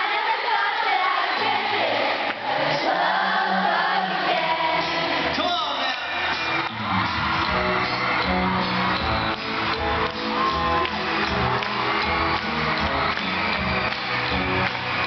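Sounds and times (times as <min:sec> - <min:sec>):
live pop-rock band: 0:06.0 - 0:15.0.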